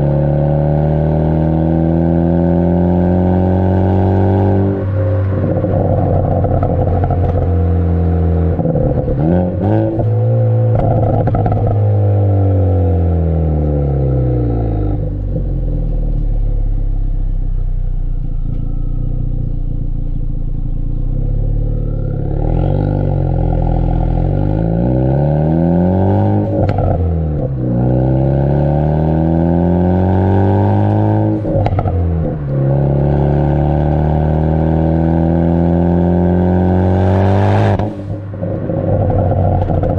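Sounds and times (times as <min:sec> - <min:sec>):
car exhaust revving: 0:00.0 - 0:39.9
exhaust pops and crackles: 0:05.2 - 0:07.7, 0:10.7 - 0:11.8, 0:26.6 - 0:27.5, 0:31.5 - 0:32.4, 0:37.8 - 0:39.9.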